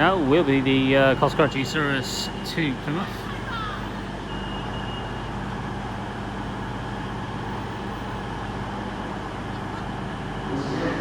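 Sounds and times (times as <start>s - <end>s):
train diesel engines running: 0.0s - 11.0s.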